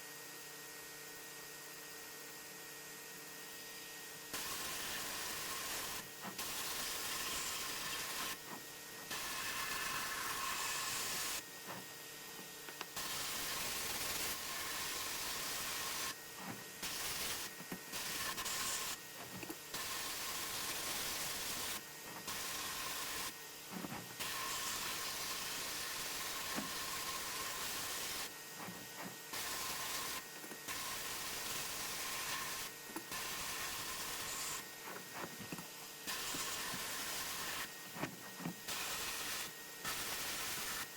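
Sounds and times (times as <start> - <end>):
sandblasting gun hissing: 4.4 - 8.4, 9.1 - 11.4, 13.0 - 16.2, 16.8 - 19.0, 19.8 - 23.4, 24.2 - 28.3, 29.4 - 34.6, 36.1 - 37.7, 38.7 - 40.9.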